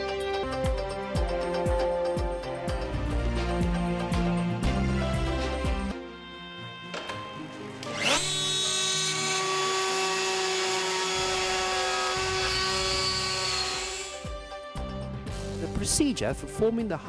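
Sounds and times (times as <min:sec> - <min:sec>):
router motor high whine: 0:06.1 - 0:14.3.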